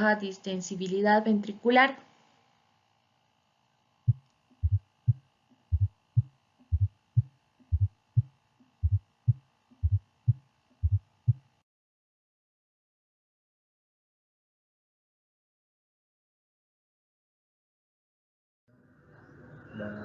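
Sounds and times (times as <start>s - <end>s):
faint steady hum: 0.0s - 11.6s
heartbeat thumps: 4.1s - 11.5s.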